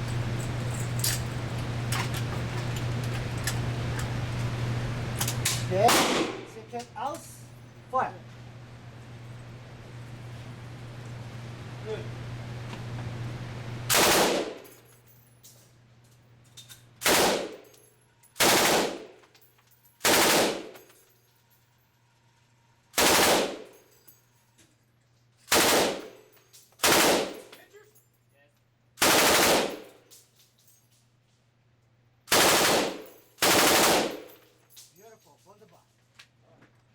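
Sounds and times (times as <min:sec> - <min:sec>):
machine gun bursts: 0:13.9 - 0:14.7, 0:17.0 - 0:17.6, 0:18.4 - 0:19.2, 0:20.0 - 0:20.8, 0:23.0 - 0:23.7, 0:25.5 - 0:26.2, 0:26.8 - 0:27.5, 0:29.0 - 0:30.0, 0:32.3 - 0:34.4.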